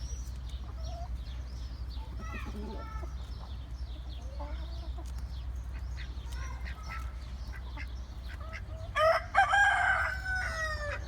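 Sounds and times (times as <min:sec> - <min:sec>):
chickens clucking softly: 0:00.2 - 0:11.0
rooster crowing: 0:09.0 - 0:11.0.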